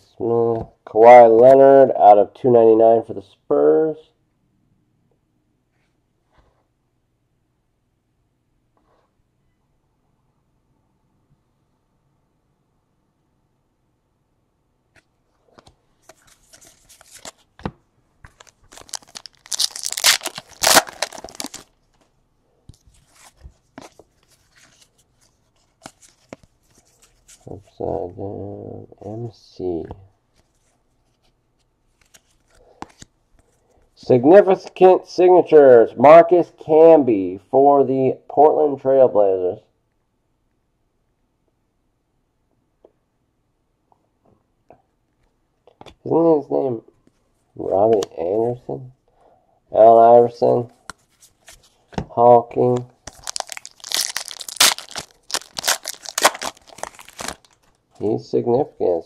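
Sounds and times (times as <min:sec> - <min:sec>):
card pack wrapper tearing: 0:18.3 - 0:21.7, 0:52.7 - 0:57.7
wrapper crinkling: 0:18.3 - 0:21.9, 0:52.7 - 0:57.8.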